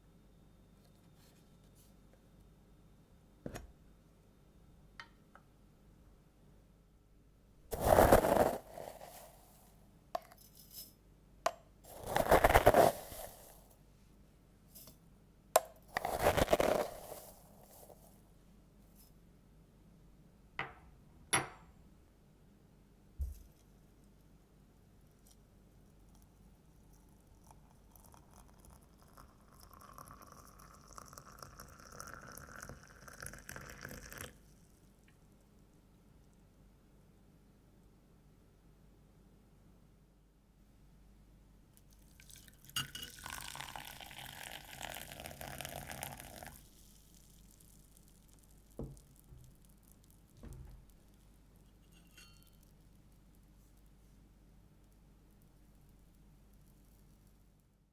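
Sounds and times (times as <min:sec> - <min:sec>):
dry tea leaves rustling: 0:07.7 - 0:09.6, 0:11.9 - 0:13.6, 0:16.0 - 0:18.2
liquid pouring into a vessel: 0:27.3 - 0:34.6, 0:42.0 - 0:49.2.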